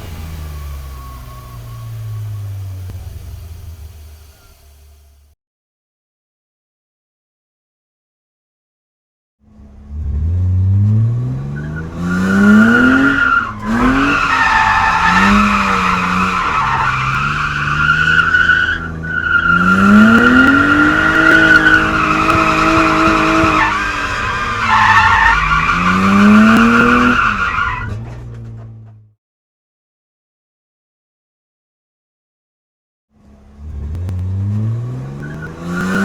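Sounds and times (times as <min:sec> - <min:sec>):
car engine revving: 0:00.0 - 0:05.3, 0:09.5 - 0:29.1, 0:33.2 - 0:36.0
tyres squealing: 0:11.5 - 0:28.6.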